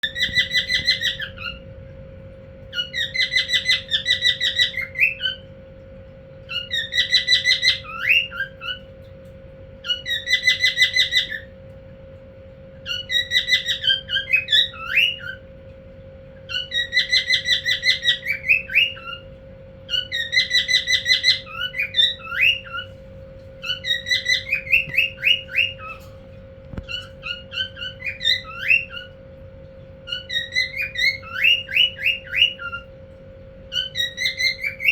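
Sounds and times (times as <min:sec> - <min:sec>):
cockatiel chattering and whistling: 0:00.0 - 0:01.6, 0:02.7 - 0:05.5, 0:06.5 - 0:08.9, 0:09.8 - 0:11.5, 0:12.8 - 0:15.4, 0:16.5 - 0:19.3, 0:19.9 - 0:23.0, 0:23.6 - 0:26.2, 0:26.8 - 0:29.2, 0:30.1 - 0:32.9, 0:33.7 - 0:34.9
steady low hum: 0:00.0 - 0:34.9.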